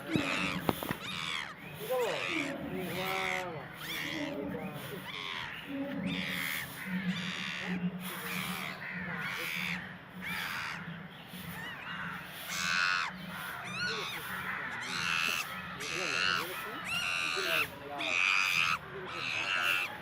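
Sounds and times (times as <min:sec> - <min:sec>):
harsh animal calls: 0:00.0 - 0:20.0.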